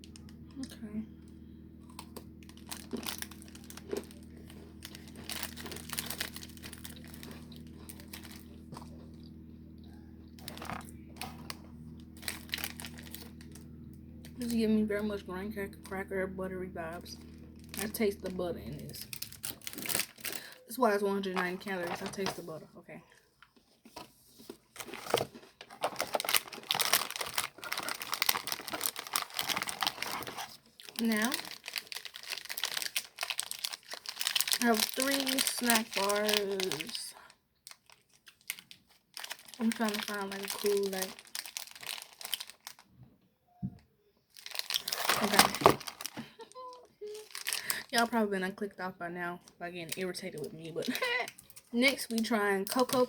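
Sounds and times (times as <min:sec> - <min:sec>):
biscuit crunching: 0:00.0 - 0:14.6, 0:17.1 - 0:20.7, 0:24.6 - 0:43.0, 0:44.3 - 0:48.0
low steady hum: 0:00.0 - 0:37.8, 0:38.4 - 0:53.0
plastic wrapper crinkling: 0:01.6 - 0:15.2, 0:16.8 - 0:43.0, 0:44.3 - 0:48.2, 0:49.9 - 0:53.0.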